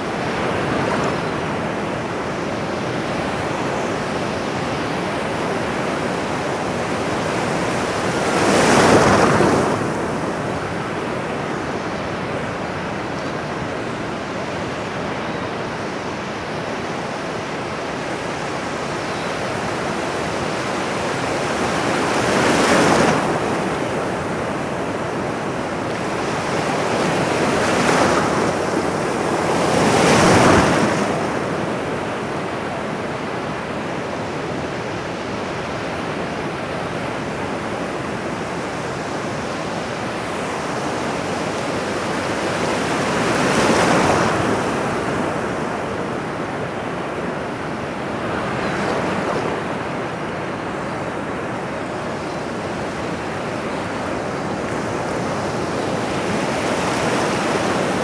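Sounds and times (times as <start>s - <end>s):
ocean surf washing: 0.0s - 58.0s
waves breaking: 39.0s - 58.0s.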